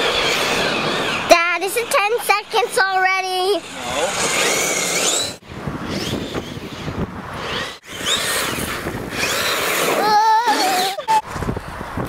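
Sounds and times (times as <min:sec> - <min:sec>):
electric motor whine: 0:00.0 - 0:01.9, 0:03.6 - 0:11.0.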